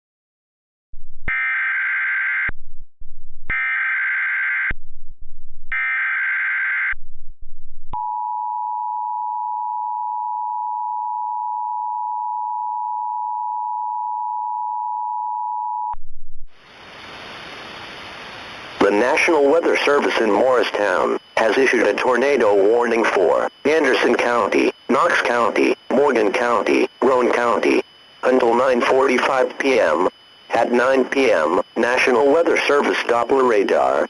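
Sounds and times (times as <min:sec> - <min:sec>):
steady two-tone attention signal: 0:18.8 - 0:34.0
warbling digital data tones: 0:18.8 - 0:34.0.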